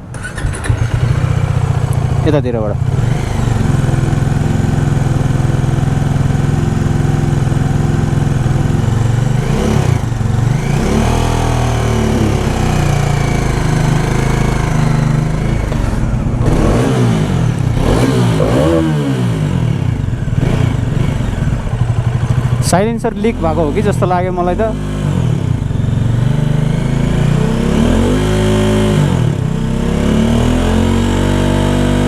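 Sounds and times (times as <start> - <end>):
raspy exhaust noise: 0.0 - 29.5
motorcycle engine idling and revving: 0.0 - 32.0.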